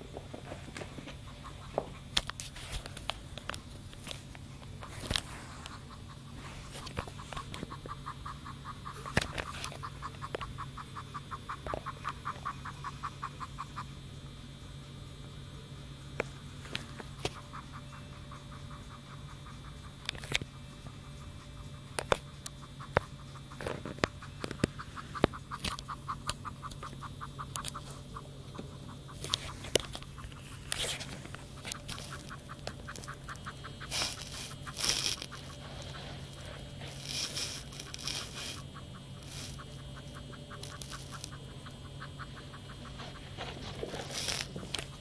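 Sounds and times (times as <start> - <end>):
kitten panting: 20.8 - 45.0
sharp clicks: 22.0 - 27.9.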